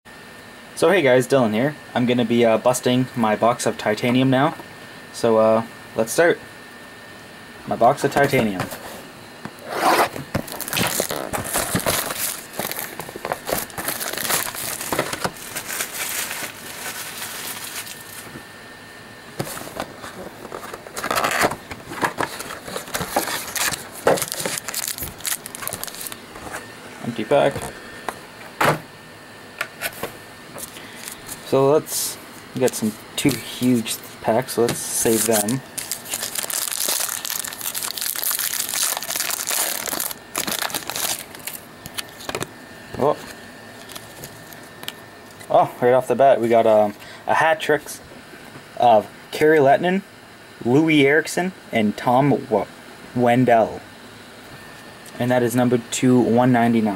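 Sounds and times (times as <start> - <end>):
plastic wrapping crinkling and tearing: 10.3 - 18.4, 20.4 - 26.6, 34.9 - 42.5, 43.8 - 44.9.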